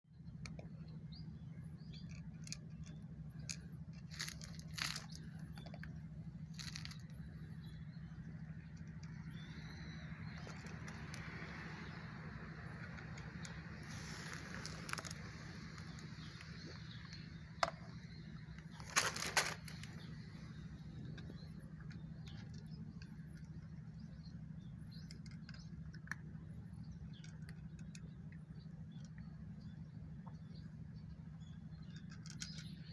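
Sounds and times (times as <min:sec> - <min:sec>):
steady low hum: 0:00.1 - 0:32.9
cat crunching and chewing food: 0:02.0 - 0:07.6, 0:10.3 - 0:20.2
cat chewing crunches: 0:03.3 - 0:05.8, 0:06.5 - 0:07.5.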